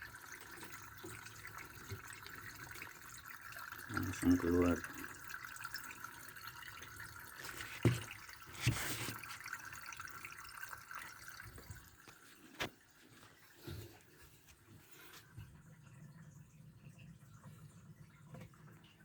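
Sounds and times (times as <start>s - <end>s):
water draining and dripping: 0.0s - 19.0s.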